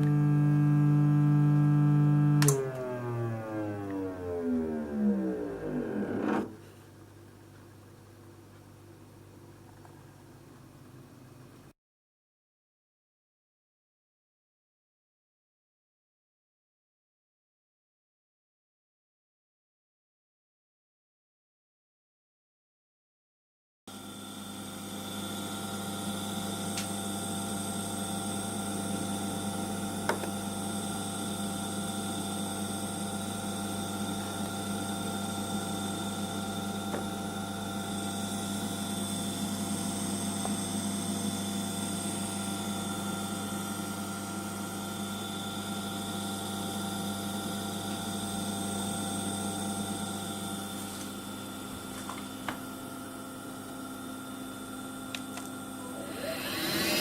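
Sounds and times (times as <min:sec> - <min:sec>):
gas boiler humming: 0:02.4 - 0:11.7, 0:24.3 - 0:57.0.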